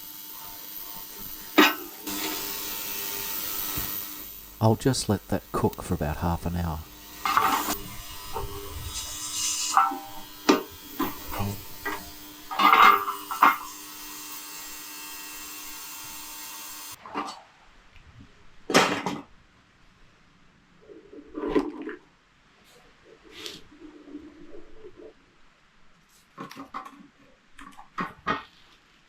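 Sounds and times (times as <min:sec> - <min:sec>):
ultrasonic cleaner humming: 0:00.0 - 0:17.0.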